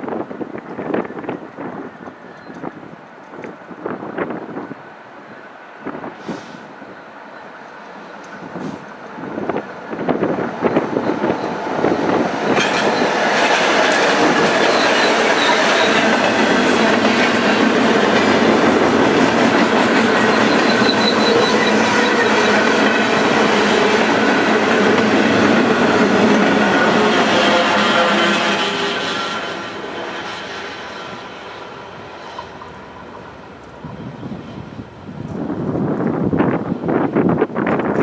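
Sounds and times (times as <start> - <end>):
train passing noise: 0.0 - 38.0
train wheels clacking: 10.0 - 34.3.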